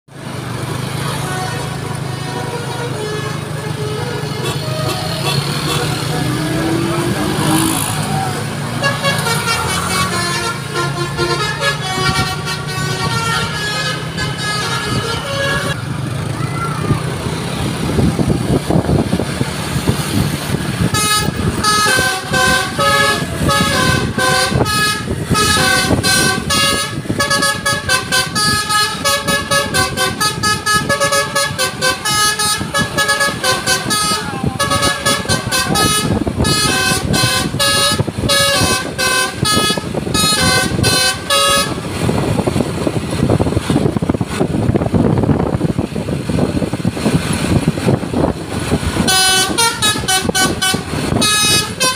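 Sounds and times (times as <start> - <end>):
vehicle noise: 0.1 - 51.9
multi-tone bus horn melody: 0.6 - 15.9, 19.8 - 44.3, 47.4 - 51.9.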